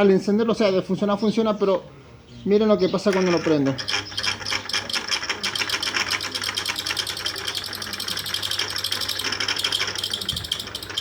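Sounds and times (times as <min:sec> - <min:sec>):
electric fan rattling: 0:02.6 - 0:11.0.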